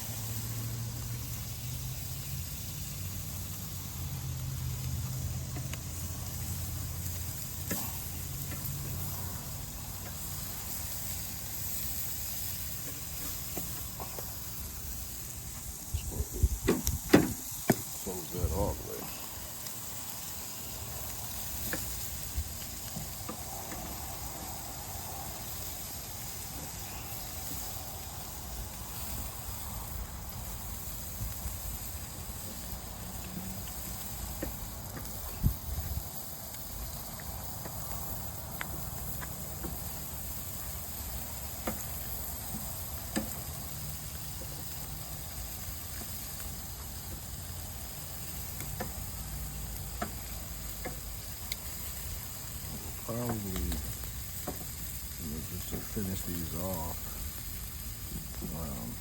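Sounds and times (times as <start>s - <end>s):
meat sizzling over charcoal: 0.0s - 59.0s
small crackles and clicks: 4.8s - 10.7s, 26.4s - 57.4s.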